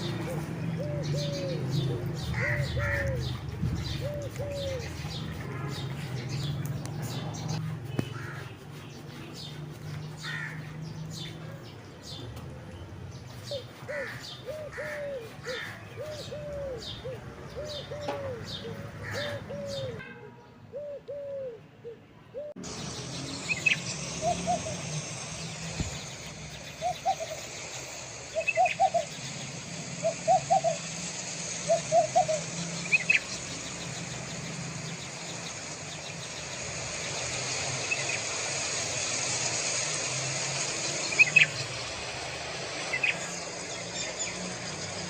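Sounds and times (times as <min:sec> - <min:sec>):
low bird calls: 0:00.0 - 0:12.3, 0:13.2 - 0:20.0, 0:20.7 - 0:39.0
sharp high bird chirps: 0:22.6 - 0:45.0.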